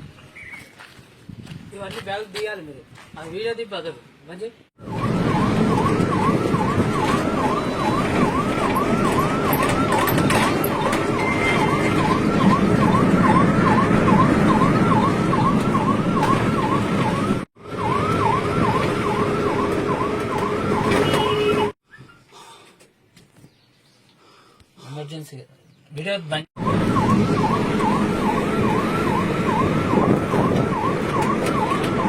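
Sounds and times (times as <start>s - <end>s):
ambulance siren yelping: 4.8s - 21.8s, 26.6s - 32.0s.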